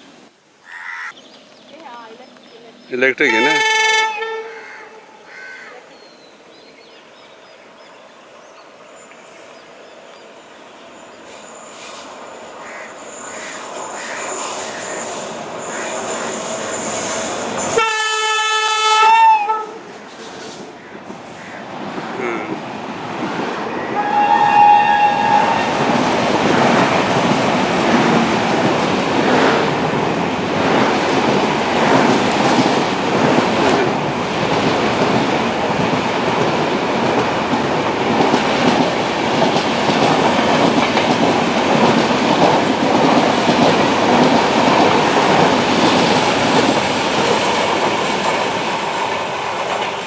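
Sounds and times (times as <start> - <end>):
train coaches rushing past: 2.0 - 50.0
locomotive horn: 3.2 - 5.6, 17.7 - 19.8, 23.7 - 26.2.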